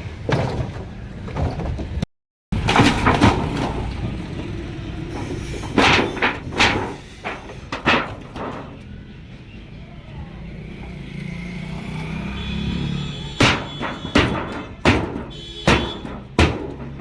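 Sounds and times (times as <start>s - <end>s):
hard metal blows on refrigerator: 2.6s - 8.8s, 13.0s - 17.0s.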